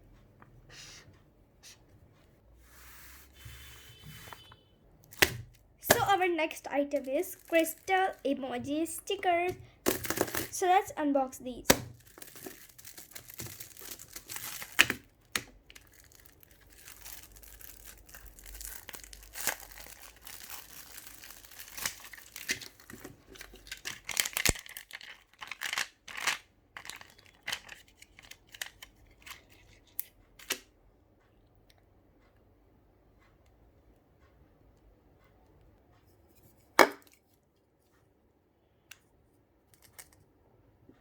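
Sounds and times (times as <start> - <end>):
packaging tearing and crinkling: 6.9 - 8.2, 9.9 - 10.6, 11.7 - 28.9.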